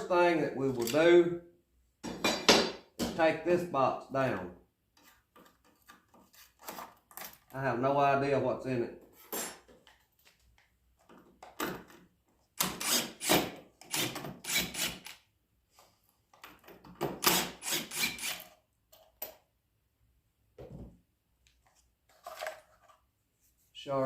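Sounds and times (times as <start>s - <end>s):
small objects clattering and rustling: 21.6s - 23.1s.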